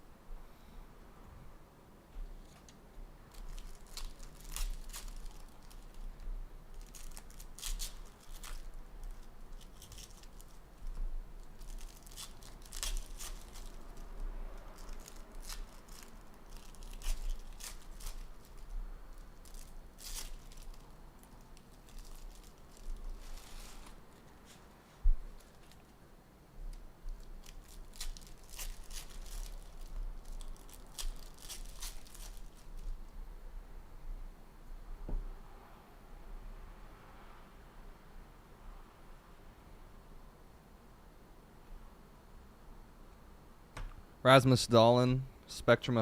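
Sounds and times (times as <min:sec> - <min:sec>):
foil wrappers tearing and crinkling: 0:03.3 - 0:24.7, 0:25.3 - 0:25.9, 0:27.1 - 0:33.0.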